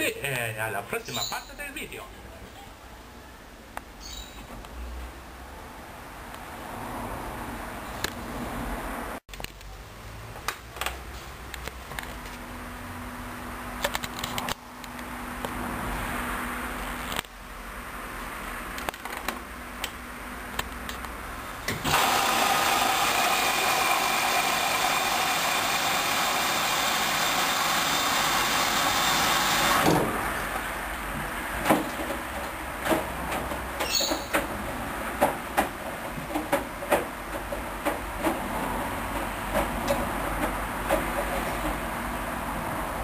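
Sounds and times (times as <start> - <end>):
washing machine humming: 21.7 - 33.8.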